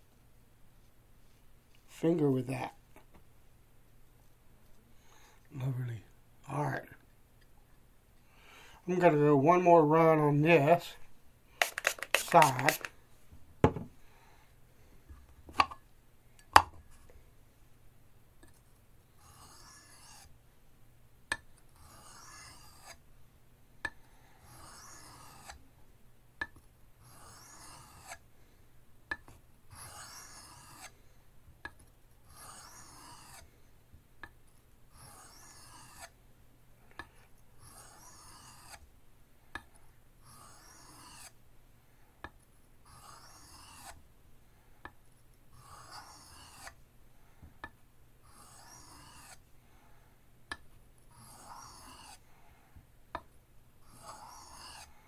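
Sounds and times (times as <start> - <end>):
knife scraping on sharpening stone: 19.2 - 20.3, 21.8 - 22.9, 24.5 - 25.6, 27.1 - 28.2, 29.7 - 30.9, 32.3 - 33.4, 35.0 - 36.1, 37.6 - 38.8, 40.3 - 41.3, 42.9 - 43.9, 45.6 - 46.7, 48.4 - 49.4, 51.2 - 52.2, 53.9 - 54.9.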